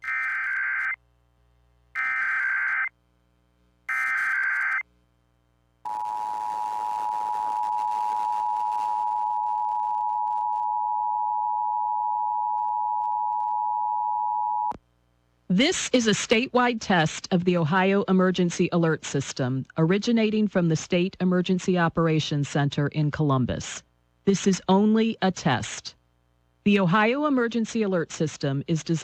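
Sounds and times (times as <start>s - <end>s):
chirping data tones: 2.0s - 2.9s, 3.9s - 4.8s.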